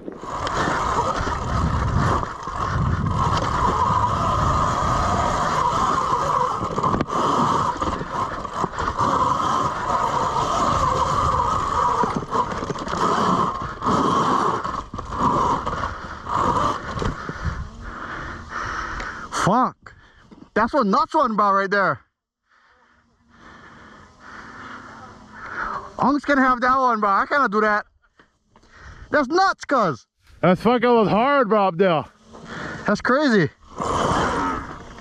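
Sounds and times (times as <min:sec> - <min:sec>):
wind buffeting microphone: 0:00.0 - 0:19.2
electric motor whine: 0:00.0 - 0:19.3, 0:23.0 - 0:27.4, 0:32.1 - 0:35.0.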